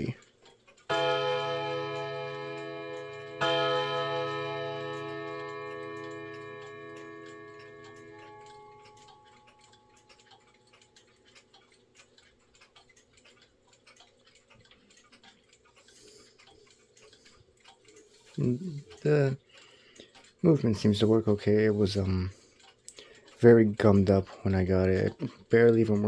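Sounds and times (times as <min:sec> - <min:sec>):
clock ticking: 0:00.0 - 0:26.0
clock gong ringing: 0:00.9 - 0:10.0.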